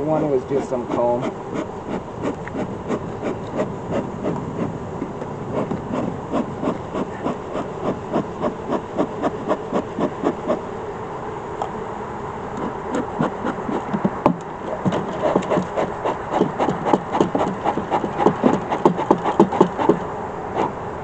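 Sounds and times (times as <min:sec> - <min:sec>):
honeybees humming: 0:00.0 - 0:21.0
wooden hive frames knocking and scraping: 0:12.6 - 0:20.1.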